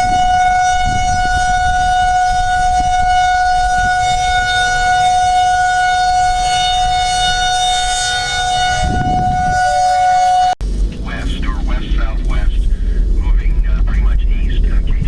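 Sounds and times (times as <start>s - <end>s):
warning siren steady tone: 0.0s - 10.6s.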